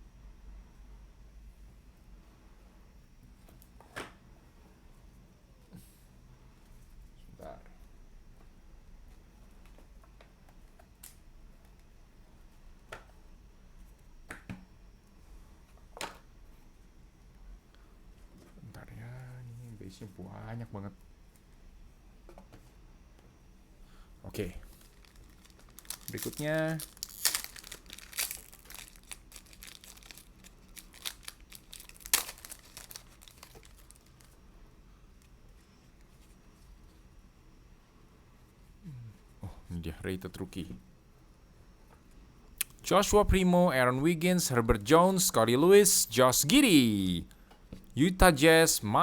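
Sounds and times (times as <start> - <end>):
foil wrapper crinkling and tearing: 24.6 - 34.4
trading cards being handled: 24.6 - 34.4
cards snapping together: 32.0 - 33.6.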